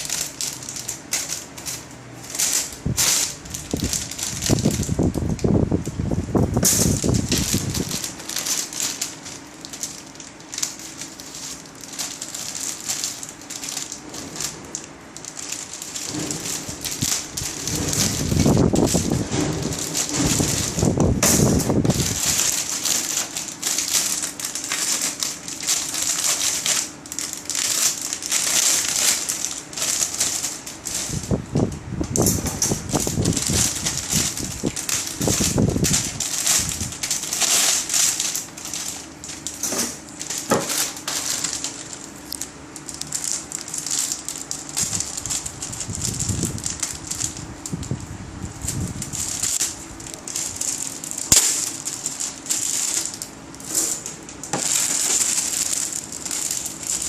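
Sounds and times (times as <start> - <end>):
plastic bags crinkling: 0.0 - 57.0.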